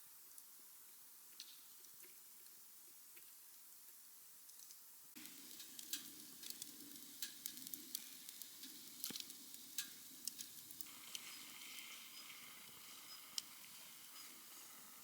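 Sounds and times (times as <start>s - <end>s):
food sizzling in a hot pan: 5.2s - 15.0s.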